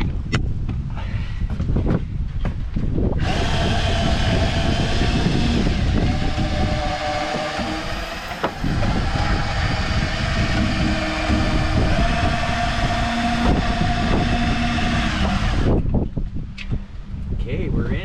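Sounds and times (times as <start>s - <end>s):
wind rumbling on microphone: 0.0s - 18.0s
drill-driven winch whining: 3.2s - 16.0s.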